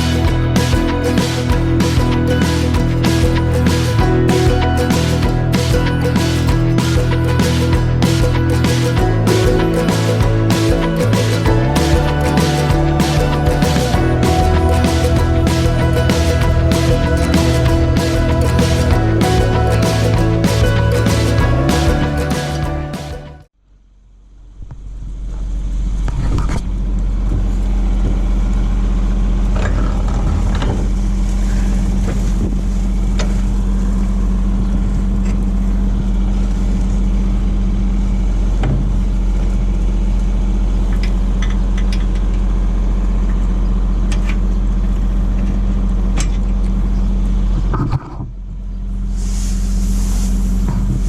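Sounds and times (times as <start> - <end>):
rattles and knocks: 0.0 - 23.4, 29.5 - 33.9
tractor engine running: 0.0 - 23.5, 24.9 - 51.0.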